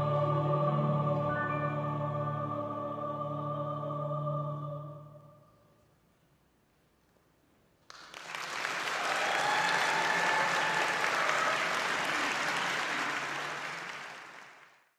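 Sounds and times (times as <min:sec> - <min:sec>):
audience applauding: 0:07.9 - 0:14.9.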